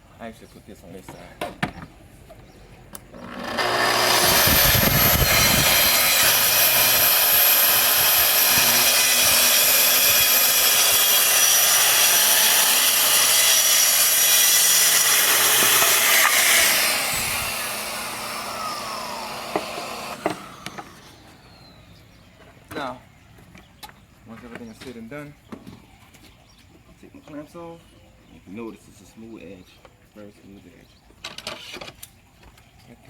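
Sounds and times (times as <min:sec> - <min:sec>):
track saw cutting plywood: 0:03.1 - 0:21.7.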